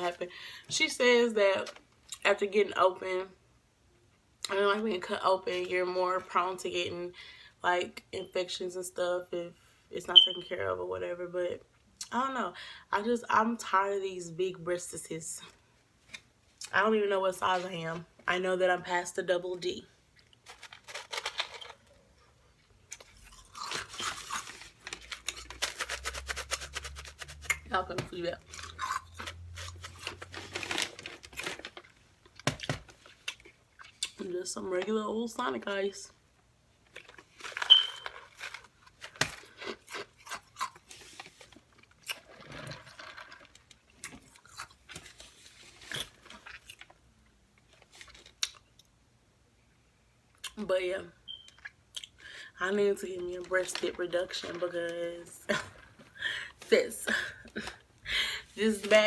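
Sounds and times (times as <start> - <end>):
crunchy chewing in mouth: 22.9 - 27.6, 36.9 - 44.9
soft chewing: 39.4 - 47.0.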